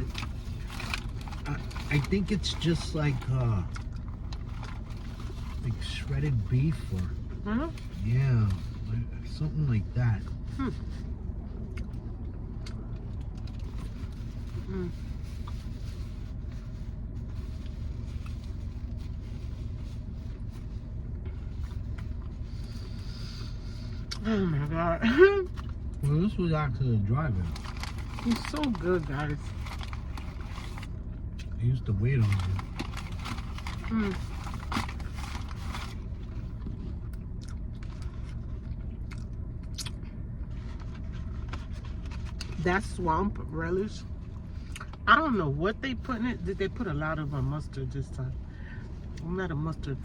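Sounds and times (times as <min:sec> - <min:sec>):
car engine idling: 0:00.0 - 0:50.0
chewing and biting food: 0:32.3 - 0:42.5.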